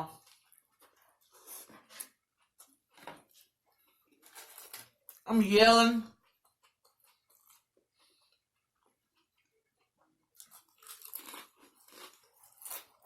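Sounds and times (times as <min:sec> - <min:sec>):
crunchy chewing of sandwich: 0:00.1 - 0:05.2, 0:06.2 - 0:13.0.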